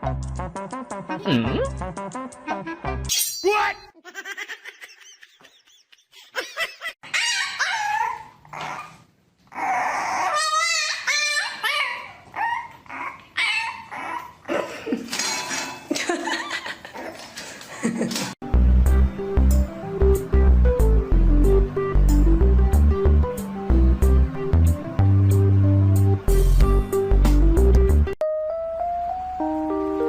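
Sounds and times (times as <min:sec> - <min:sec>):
dog whining and yipping: 0:07.0 - 0:14.4.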